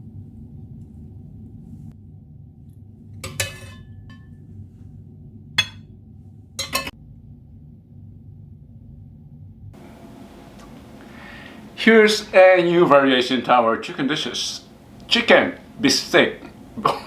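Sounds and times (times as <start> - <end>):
steady low hum: 0.0 - 17.0
utensil clinking against plate: 3.2 - 4.3, 5.6 - 5.8, 6.6 - 6.9.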